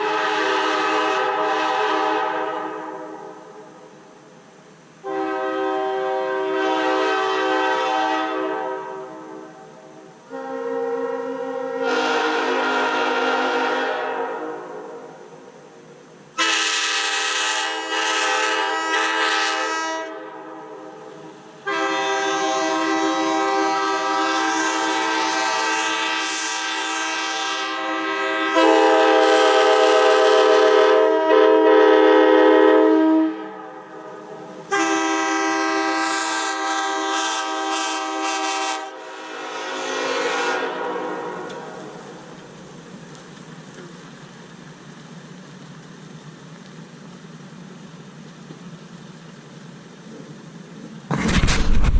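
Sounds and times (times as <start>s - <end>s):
train air horn chord: 0.0s - 3.7s, 5.0s - 15.3s, 16.4s - 21.0s, 21.6s - 42.0s.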